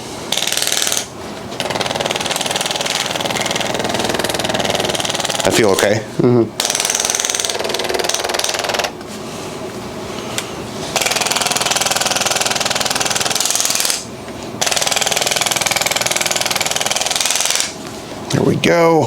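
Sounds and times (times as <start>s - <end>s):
massage gun hammering: 0.3s - 5.9s, 11.0s - 17.8s.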